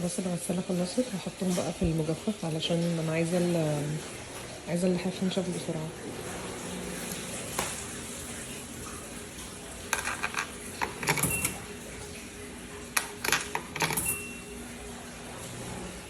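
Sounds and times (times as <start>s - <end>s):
dryer door and controls clicking: 10.0s - 11.9s, 13.0s - 14.5s.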